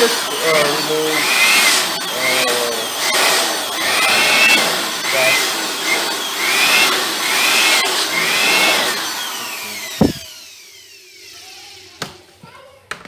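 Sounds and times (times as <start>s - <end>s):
electric blower whining: 0.0s - 11.3s
dull knock: 10.0s - 10.2s.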